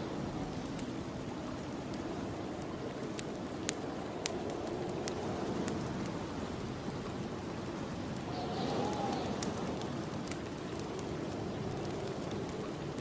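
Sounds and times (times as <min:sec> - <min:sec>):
fire crackling and popping: 0:00.0 - 0:13.0
wind blowing: 0:00.0 - 0:13.0.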